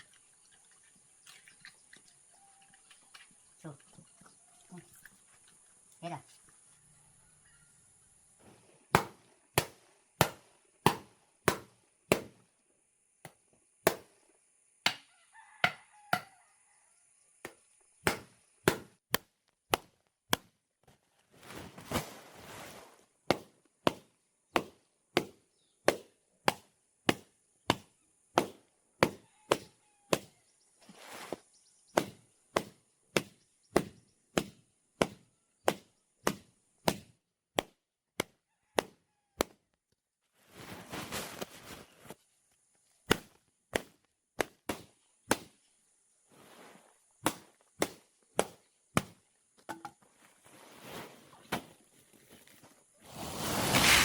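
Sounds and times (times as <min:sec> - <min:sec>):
rustling: 0:21.2 - 0:23.1, 0:30.8 - 0:31.5, 0:40.4 - 0:42.2, 0:46.3 - 0:47.7, 0:50.0 - 0:54.0.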